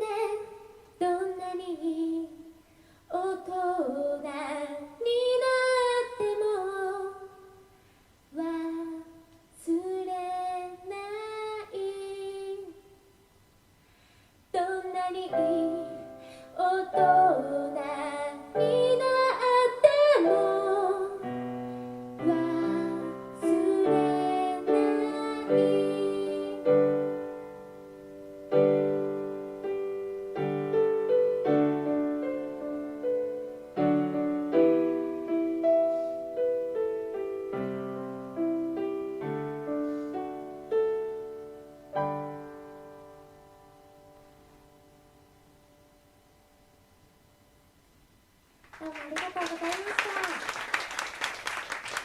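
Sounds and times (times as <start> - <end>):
woman singing with vibrato: 0.0 - 7.6, 8.3 - 13.0, 14.5 - 21.4, 22.2 - 27.1
piano notes and chords: 15.3 - 46.8.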